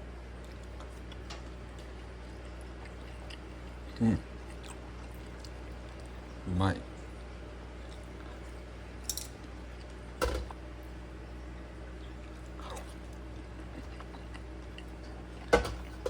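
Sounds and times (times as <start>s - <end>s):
low background hum: 0.0s - 16.0s
person chewing: 0.4s - 6.2s, 7.2s - 8.6s, 12.0s - 15.5s.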